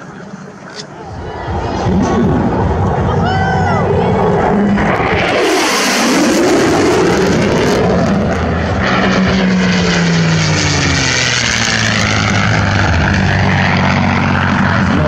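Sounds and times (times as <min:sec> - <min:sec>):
propeller airplane engine flying past: 0:00.0 - 0:15.0.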